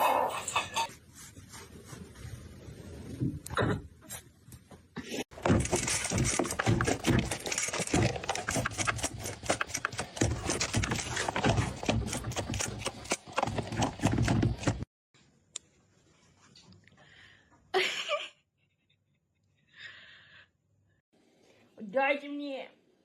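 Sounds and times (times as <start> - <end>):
hard objects clattering: 5.3 - 14.9.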